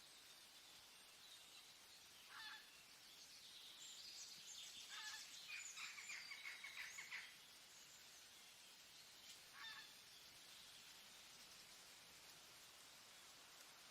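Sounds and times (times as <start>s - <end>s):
steady hiss: 0.0s - 13.9s
faint bird calls: 2.2s - 2.8s, 4.8s - 7.4s, 9.4s - 10.1s.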